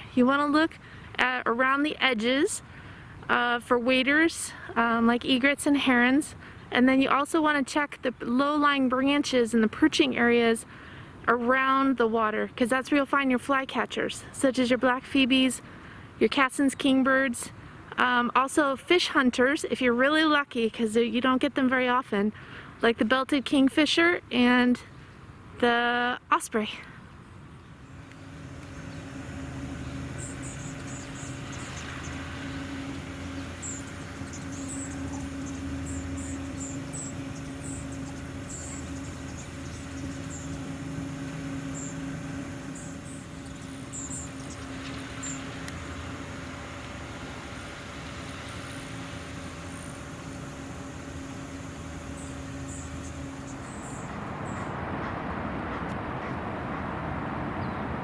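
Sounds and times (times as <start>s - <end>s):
engine drone: 0.0s - 23.2s, 24.4s - 58.0s
even rushing noise: 28.2s - 58.0s.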